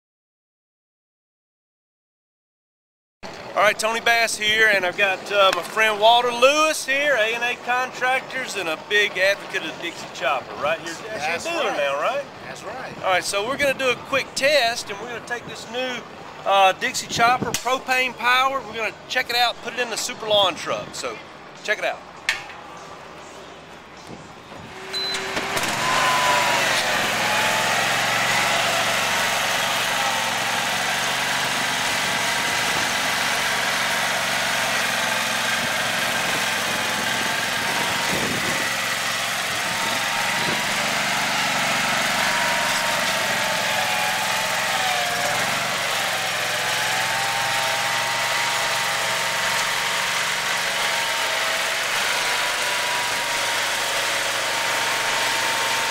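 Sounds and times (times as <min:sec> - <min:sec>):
mower engine starting and running: 0:24.6 - 0:55.9.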